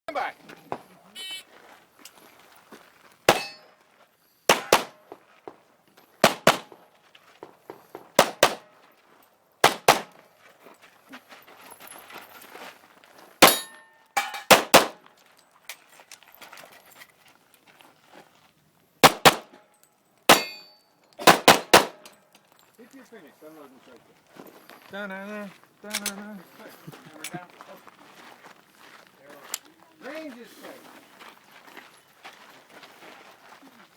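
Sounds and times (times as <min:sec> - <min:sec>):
pistol shots: 0:03.3 - 0:03.6, 0:04.5 - 0:05.0, 0:06.2 - 0:06.8, 0:08.2 - 0:08.7, 0:09.6 - 0:10.2, 0:13.4 - 0:13.7, 0:14.4 - 0:15.0, 0:19.0 - 0:19.6, 0:20.3 - 0:22.1.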